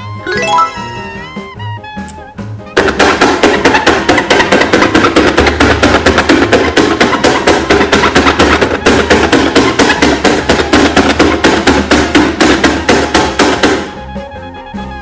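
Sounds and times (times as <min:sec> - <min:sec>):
soft tune of held notes: 0:00.0 - 0:01.4
fast hard knocks: 0:02.8 - 0:14.0.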